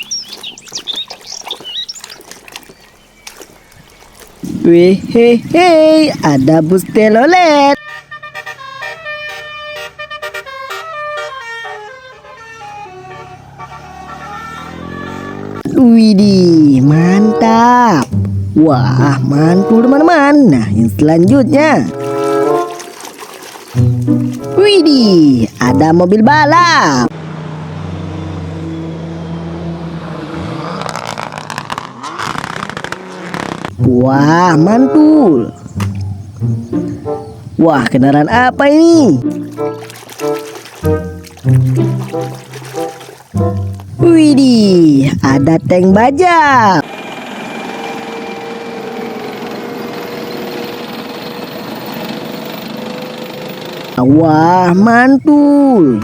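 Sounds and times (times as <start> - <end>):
race car engine running: 46.9 - 54.0.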